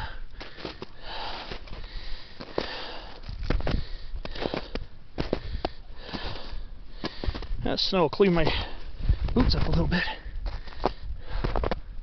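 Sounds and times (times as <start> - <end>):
heavy sniffing breaths: 0.0 - 7.5.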